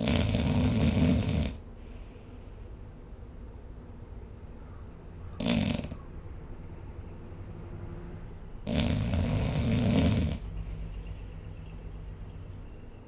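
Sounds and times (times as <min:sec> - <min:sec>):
person snoring: 0:00.0 - 0:01.6, 0:05.4 - 0:06.0, 0:08.7 - 0:10.4.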